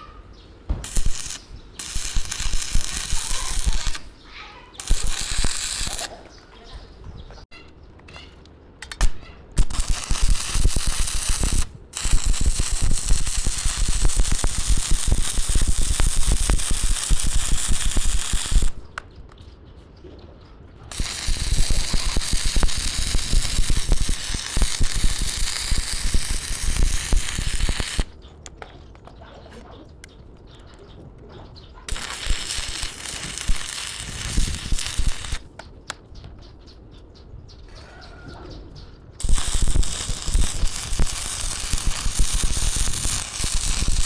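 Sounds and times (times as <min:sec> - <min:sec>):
arc welding crackling: 0:00.7 - 0:06.2, 0:08.9 - 0:19.0, 0:20.9 - 0:28.2, 0:31.8 - 0:36.0, 0:39.2 - 0:44.0.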